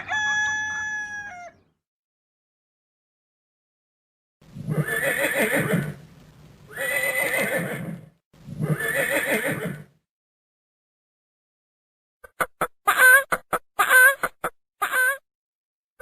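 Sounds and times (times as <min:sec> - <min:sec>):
horse whinnying: 0:04.7 - 0:06.0, 0:06.7 - 0:10.0.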